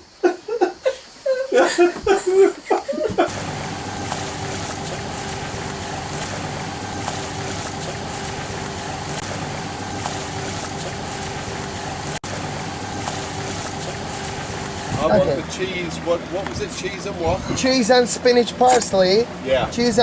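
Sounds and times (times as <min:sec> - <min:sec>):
boat engine running: 0:03.2 - 0:20.0
wind on microphone: 0:03.3 - 0:15.5, 0:16.5 - 0:17.7.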